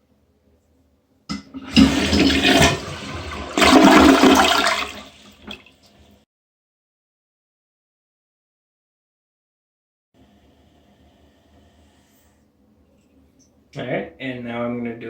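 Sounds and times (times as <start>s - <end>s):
toilet flush water rushing: 1.3s - 6.0s.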